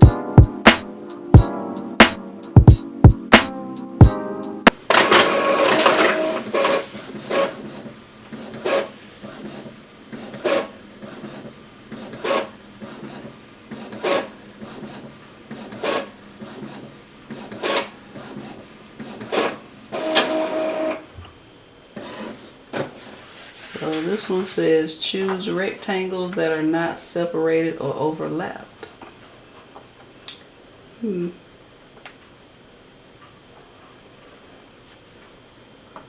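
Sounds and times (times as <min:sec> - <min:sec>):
printer paper feed whir: 0:04.9 - 0:24.2.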